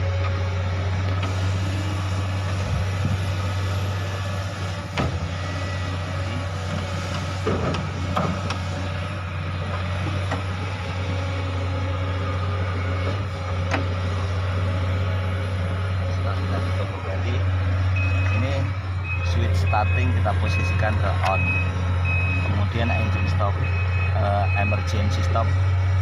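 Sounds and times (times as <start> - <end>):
machinery humming: 0.0 - 26.0.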